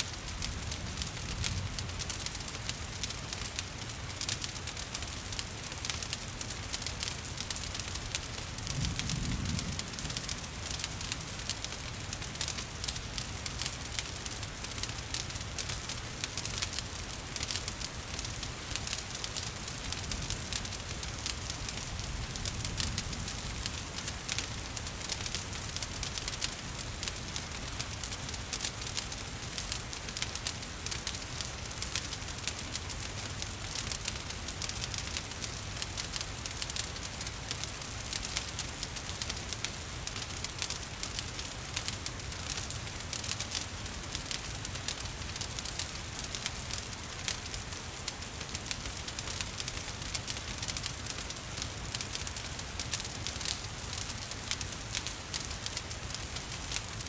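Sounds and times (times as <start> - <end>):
rain falling: 0.0 - 57.0
wood fire crackling: 0.0 - 57.0.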